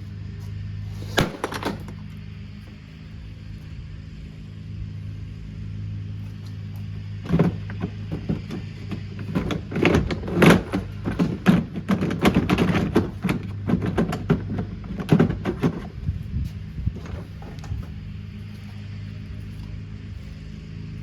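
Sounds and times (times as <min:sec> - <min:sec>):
steady low hum: 0:00.0 - 0:21.0
plastic housing knocks and clatters: 0:07.2 - 0:16.1.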